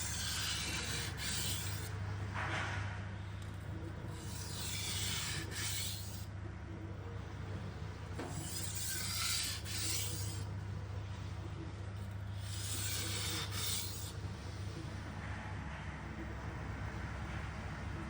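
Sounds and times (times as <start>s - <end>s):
knife scraping on sharpening stone: 0.0s - 1.9s, 4.1s - 6.3s, 8.3s - 10.5s, 12.4s - 14.1s
steady low hum: 0.0s - 18.0s.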